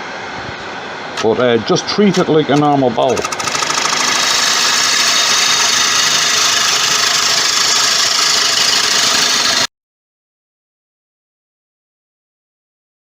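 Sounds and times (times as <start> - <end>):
lathe tool cutting wood: 3.1 - 9.7.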